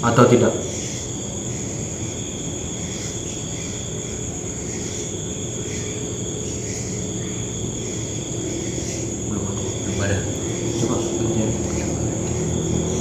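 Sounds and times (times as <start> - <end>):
night insects trilling: 0.0 - 13.0
low background rumble: 0.7 - 13.0.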